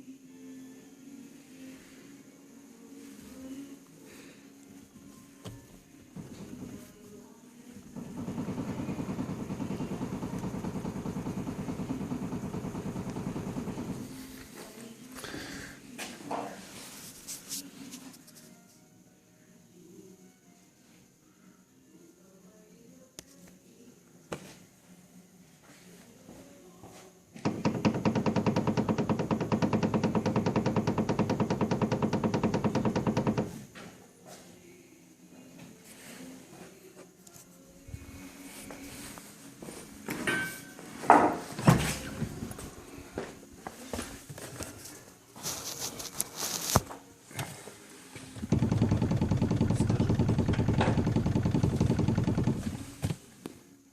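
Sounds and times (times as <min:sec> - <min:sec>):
steering rack knocking: 0:27.4 - 0:33.6, 0:48.4 - 0:53.2
car engine starting and idling: 0:48.4 - 0:53.1.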